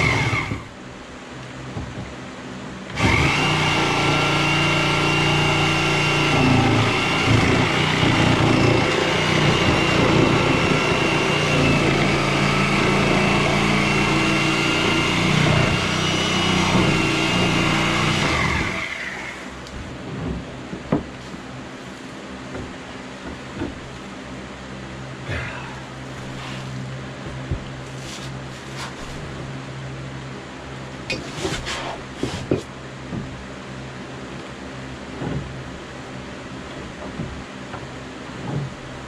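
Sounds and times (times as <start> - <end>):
power tool motor whining: 0.0 - 0.7, 2.9 - 19.5.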